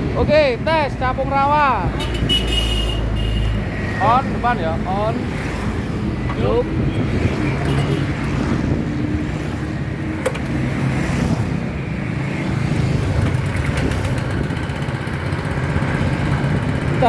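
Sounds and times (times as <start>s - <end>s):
tractor engine running: 11.7s - 17.0s.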